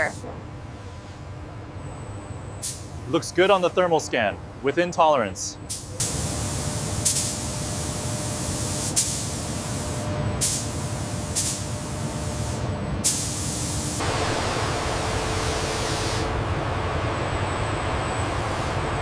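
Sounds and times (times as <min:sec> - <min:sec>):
compressed air hissing: 0:05.7 - 0:14.4, 0:15.4 - 0:16.3.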